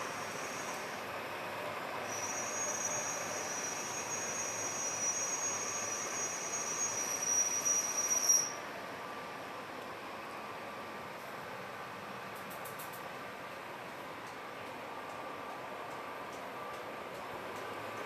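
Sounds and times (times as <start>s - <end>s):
high-pitched lathe squeal: 0.2s - 0.9s, 2.1s - 8.6s.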